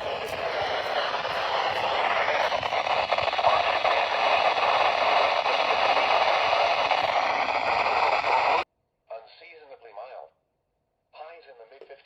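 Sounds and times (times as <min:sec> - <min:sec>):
radio static hiss: 0:00.0 - 0:08.6.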